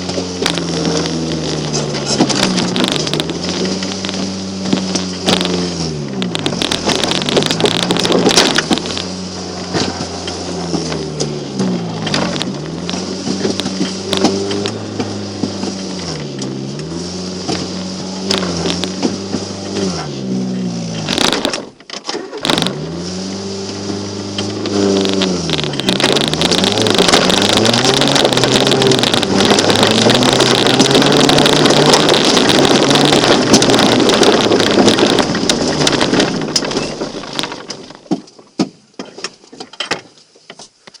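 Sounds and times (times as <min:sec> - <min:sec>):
car engine revving: 0:00.0 - 0:38.1
scattered clicks: 0:24.4 - 0:38.0
loud steady rushing noise: 0:24.5 - 0:37.7.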